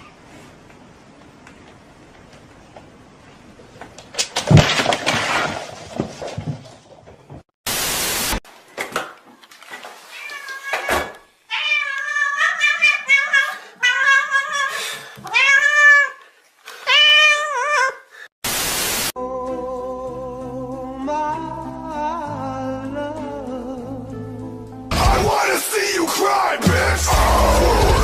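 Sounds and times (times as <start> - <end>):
cat meowing: 10.1 - 16.2
music: 19.2 - 28.0.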